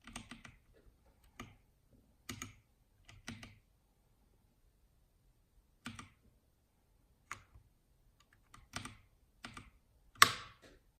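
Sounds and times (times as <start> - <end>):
mechanical keyboard keystrokes: 0.0 - 0.6, 2.2 - 3.6, 5.8 - 6.2, 8.2 - 10.7.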